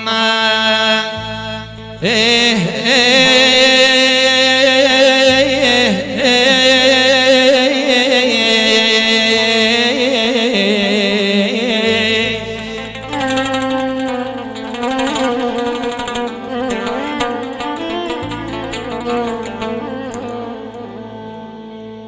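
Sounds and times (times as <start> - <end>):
man singing ornamented melody: 0.0 - 22.0
sustained accompaniment: 12.0 - 22.0.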